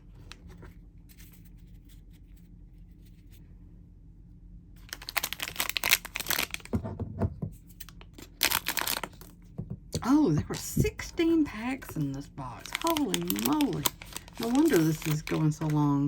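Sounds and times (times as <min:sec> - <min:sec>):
plastic wrapper tearing and crinkling: 0:04.8 - 0:06.7, 0:07.8 - 0:09.4, 0:11.9 - 0:16.0.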